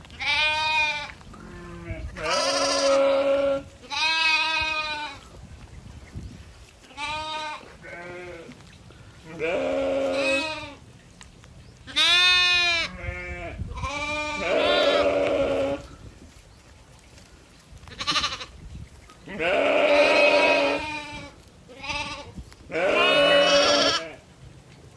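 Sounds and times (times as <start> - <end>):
goats bleating: 0.2 - 5.3, 6.9 - 8.6, 9.2 - 10.8, 11.9 - 15.9, 17.9 - 18.5, 19.2 - 24.2.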